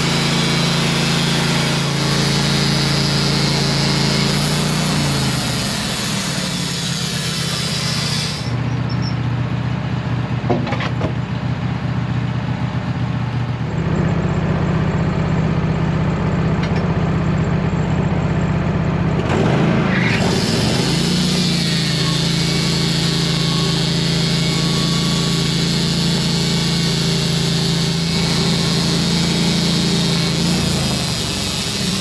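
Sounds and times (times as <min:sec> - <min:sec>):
band blade cutting log hiss: 0:00.0 - 0:08.6, 0:20.0 - 0:32.0
sawmill engine running: 0:00.0 - 0:32.0.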